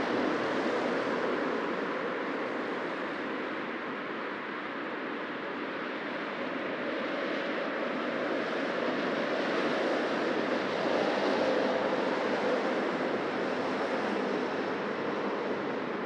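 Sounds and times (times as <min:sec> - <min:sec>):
cars passing on busy road: 0:00.0 - 0:16.0.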